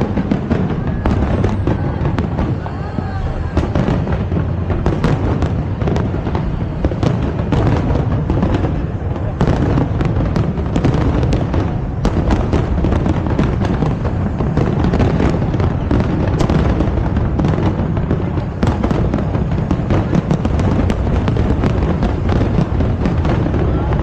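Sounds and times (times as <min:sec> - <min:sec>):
fireworks cracking and crackling: 0:00.0 - 0:24.0
low rumble of fireworks bursts: 0:00.0 - 0:24.0.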